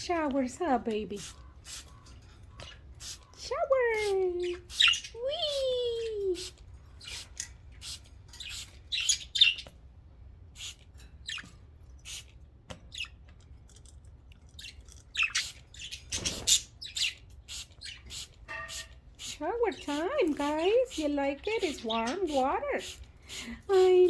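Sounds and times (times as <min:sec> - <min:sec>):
budgerigars chirping and squawking: 0:00.6 - 0:05.2, 0:06.9 - 0:09.7, 0:10.6 - 0:12.2, 0:12.9 - 0:13.2, 0:14.6 - 0:24.0
spray bottle squirts: 0:17.5 - 0:20.0.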